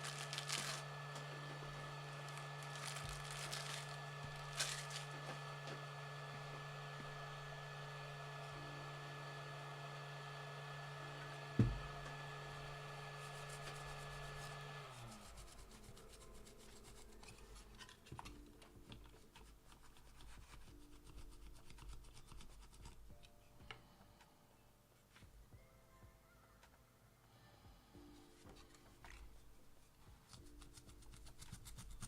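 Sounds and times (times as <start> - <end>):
small machine humming: 0.0 - 24.5.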